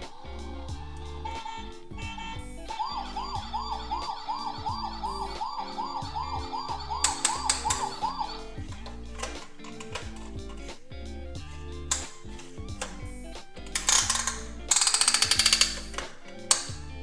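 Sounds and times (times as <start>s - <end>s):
background music: 0.0s - 17.0s
cartoon siren yelping: 1.4s - 8.6s.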